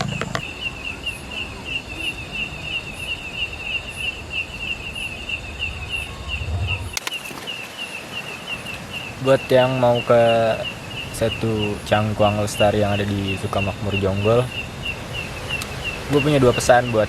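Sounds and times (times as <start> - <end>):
insect chirping: 0.0 - 17.0
low steady rumble: 5.5 - 7.0.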